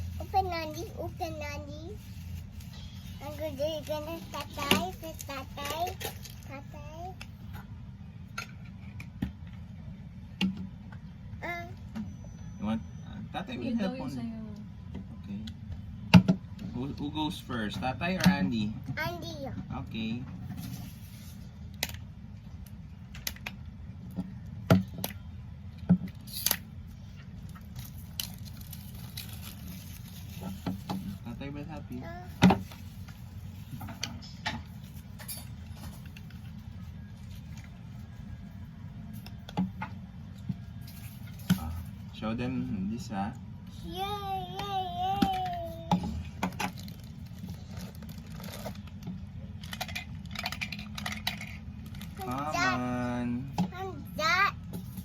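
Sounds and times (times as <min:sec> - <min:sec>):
packaging clicks and crinkles: 0:27.4 - 0:30.9, 0:46.5 - 0:52.5.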